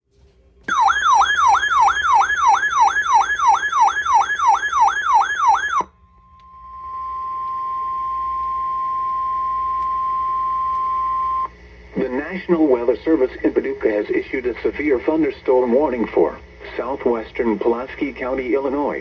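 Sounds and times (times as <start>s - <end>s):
electronic siren sweeping downward: 0.7s - 5.9s
steady alarm tone: 0.7s - 5.9s.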